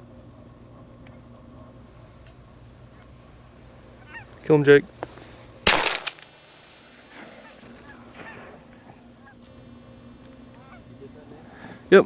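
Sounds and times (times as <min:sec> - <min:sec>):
shotgun blast: 0:05.7 - 0:06.2.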